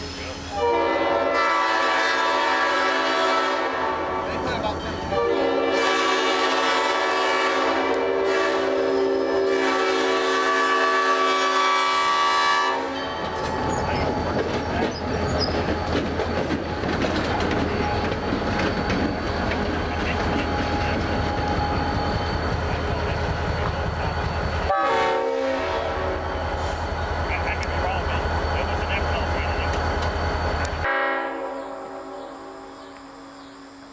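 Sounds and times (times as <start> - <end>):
train rumble and rail clatter: 0.0 - 33.9
train air horn blast: 0.5 - 13.2, 24.7 - 26.8, 30.8 - 32.7.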